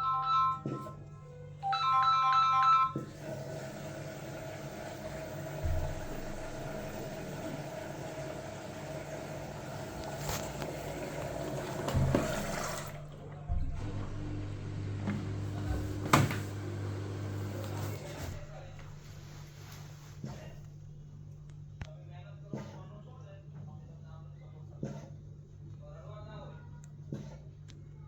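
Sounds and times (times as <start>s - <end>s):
washing machine start melody: 0.0s - 20.1s
water rushing into drum: 3.1s - 19.7s.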